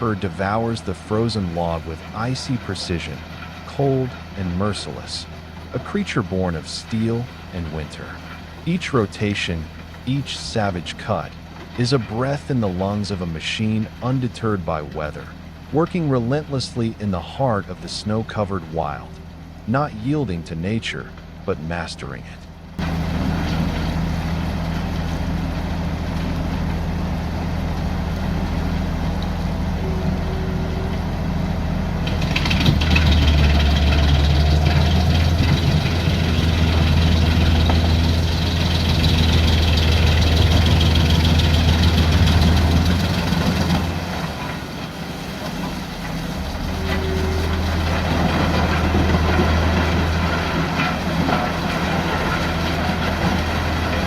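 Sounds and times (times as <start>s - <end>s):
wood chipper engine running: 0.0s - 19.7s, 22.5s - 54.0s.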